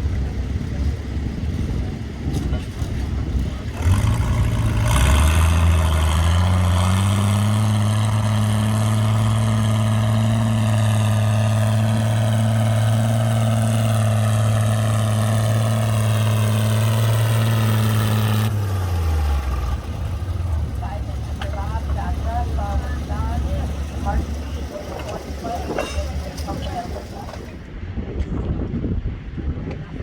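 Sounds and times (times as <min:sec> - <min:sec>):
engine starting and running: 0:00.0 - 0:27.8.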